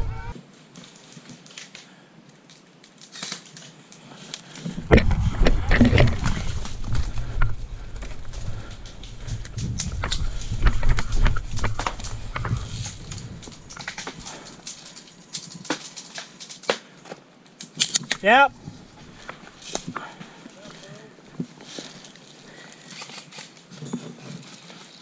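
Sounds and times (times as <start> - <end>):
low rumble: 0.0 - 0.4, 4.7 - 14.6.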